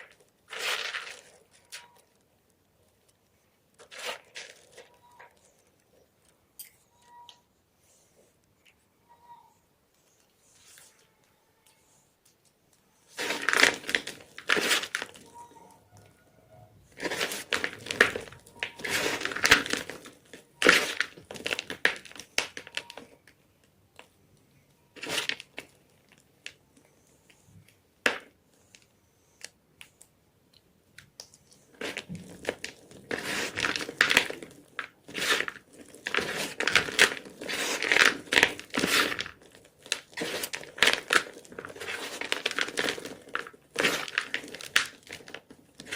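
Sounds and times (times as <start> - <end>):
chalk crunching and crumbling: 0.0 - 2.0, 3.8 - 5.5, 13.1 - 15.3, 16.9 - 22.9, 31.4 - 45.9.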